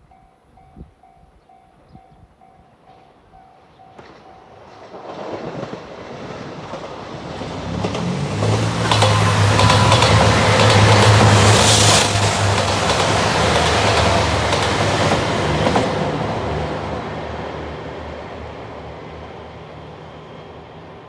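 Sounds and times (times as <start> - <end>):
train wheels clattering over rails: 4.0 - 16.9.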